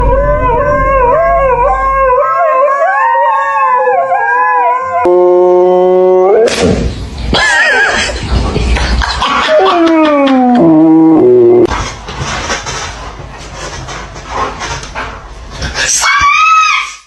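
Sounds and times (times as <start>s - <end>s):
dog howling: 0.0s - 5.1s
flat buzzing tone: 5.1s - 6.4s.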